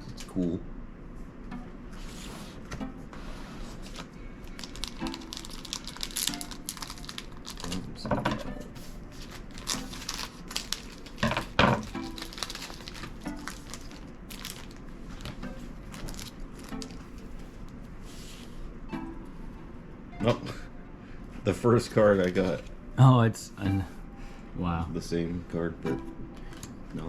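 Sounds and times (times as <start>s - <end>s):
cards being handled: 3.8s - 7.9s, 8.8s - 17.9s
plastic wrapper crinkling: 3.8s - 8.0s, 8.8s - 17.9s.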